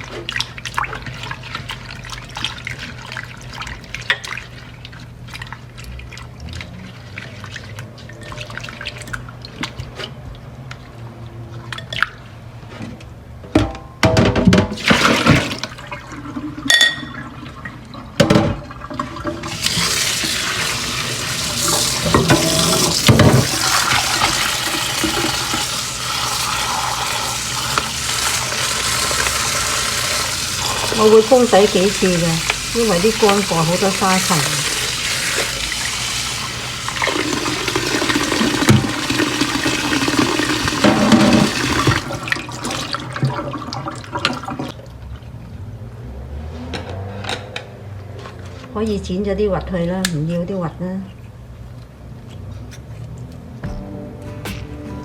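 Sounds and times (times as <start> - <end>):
things clattering in sink: 11.7 - 35.6, 37.0 - 44.8
tap running into sink: 19.3 - 35.6, 37.0 - 43.4.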